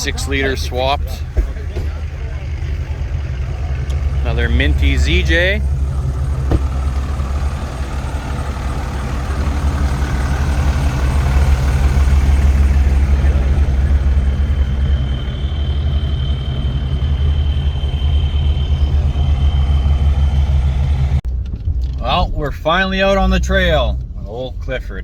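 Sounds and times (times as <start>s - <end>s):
vehicle engine rumbling: 0.0s - 25.0s
thin high whine: 12.9s - 21.2s.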